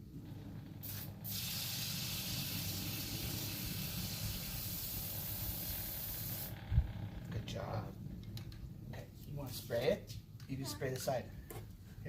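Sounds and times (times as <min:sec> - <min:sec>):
aerosol spray can hissing: 0:00.8 - 0:06.6.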